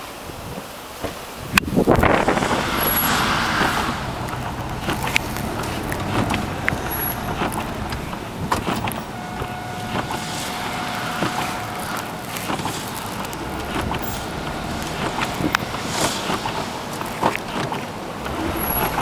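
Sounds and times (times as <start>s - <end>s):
steady traffic rumble: 0.0s - 19.0s
cars passing: 1.0s - 19.0s
steady tone: 1.6s - 18.2s
scattered clicks: 4.2s - 19.0s.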